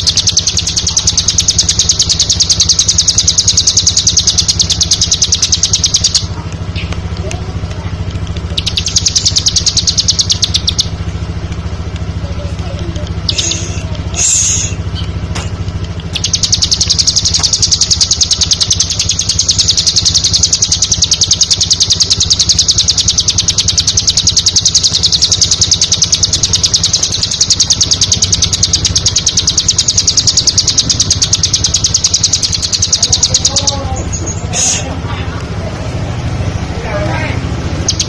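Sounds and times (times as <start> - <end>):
bird singing high-pitched trill: 0.0 - 6.9, 8.4 - 11.0, 13.1 - 15.2, 16.0 - 34.6, 37.8 - 38.0
steady low hum: 0.0 - 38.0.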